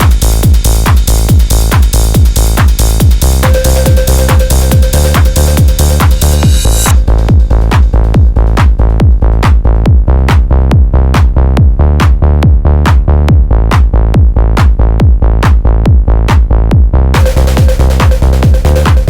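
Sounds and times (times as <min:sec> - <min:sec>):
sharp drum machine hits: 0:00.0 - 0:08.8, 0:17.2 - 0:19.0
low synth bass drone: 0:00.0 - 0:19.0.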